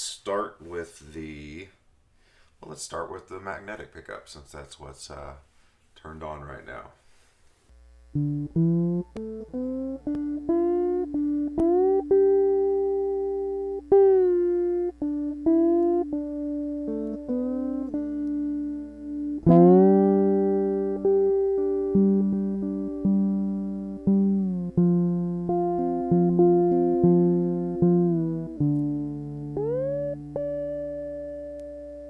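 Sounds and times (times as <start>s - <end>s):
low electrical hum: 0.0s - 32.0s
electric slide guitar plucked notes: 8.1s - 32.0s.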